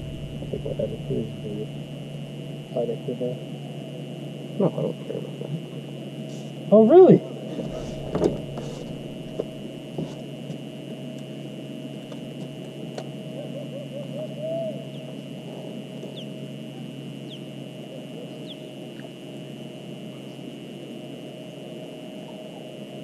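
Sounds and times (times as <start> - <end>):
electric motor humming: 0.0 - 13.3.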